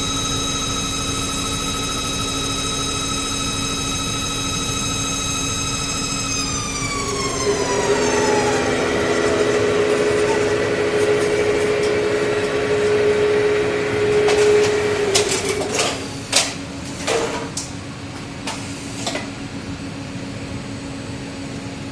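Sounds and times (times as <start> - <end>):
low drone: 0.0 - 15.4
machine motor whine and hum: 0.0 - 21.7.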